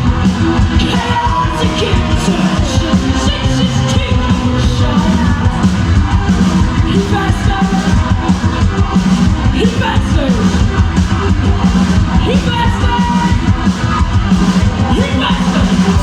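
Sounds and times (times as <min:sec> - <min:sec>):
rock band playing: 0:00.0 - 0:16.0
shouted vocals: 0:00.7 - 0:05.7.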